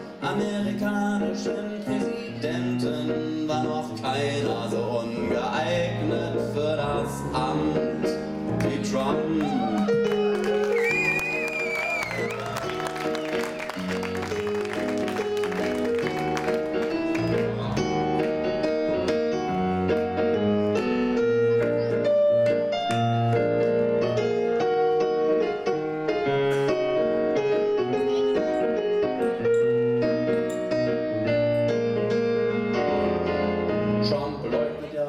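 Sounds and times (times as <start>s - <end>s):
piano playing chords and melody: 0.0s - 35.0s
audience clapping: 9.4s - 18.4s.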